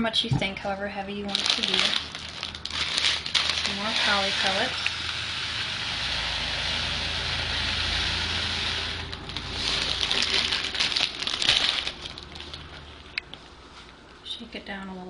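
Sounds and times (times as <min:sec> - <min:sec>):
plastic pellets pouring: 0:01.3 - 0:12.6.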